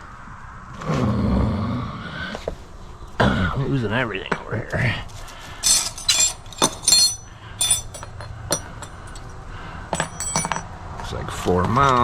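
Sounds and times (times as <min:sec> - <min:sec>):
metal hardware clinking: 0:05.5 - 0:09.4, 0:10.0 - 0:10.7.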